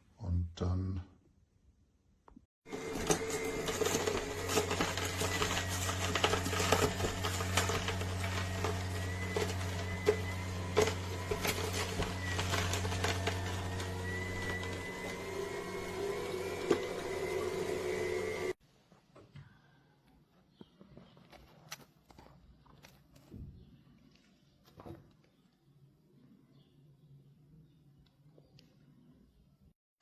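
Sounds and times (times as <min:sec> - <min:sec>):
juicer motor hum: 0:02.6 - 0:18.6
produce cracking in juicer: 0:02.7 - 0:18.6.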